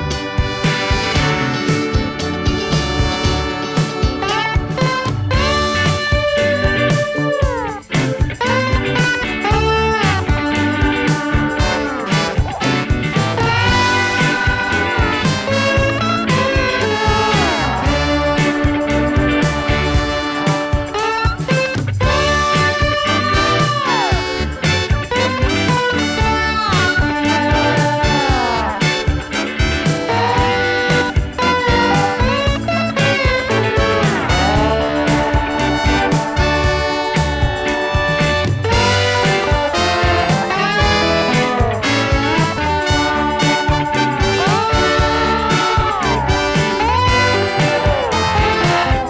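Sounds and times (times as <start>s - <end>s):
upbeat swing music: 0.0s - 49.0s.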